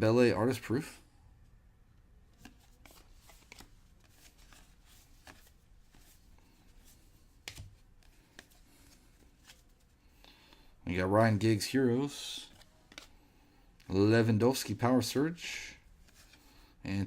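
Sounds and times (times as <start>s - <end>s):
trading cards sliding and flicking: 2.3s - 10.0s, 12.4s - 13.3s, 16.0s - 16.6s.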